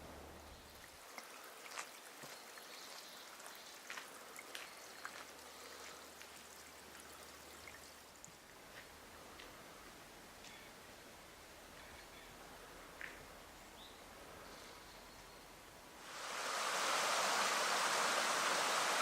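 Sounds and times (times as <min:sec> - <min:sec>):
water trickling: 0:00.6 - 0:08.6
small drips: 0:00.7 - 0:09.6.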